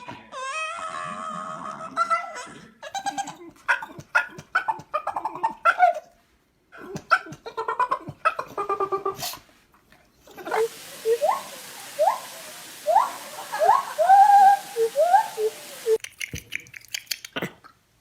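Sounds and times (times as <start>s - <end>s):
dog whining: 0.0s - 3.5s.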